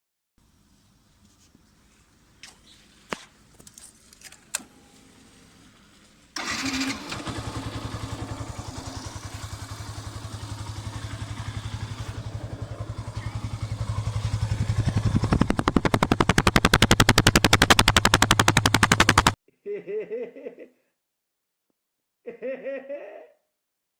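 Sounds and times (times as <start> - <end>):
motorcycle engine running: 5.0 - 19.4
exhaust popping: 6.4 - 19.4.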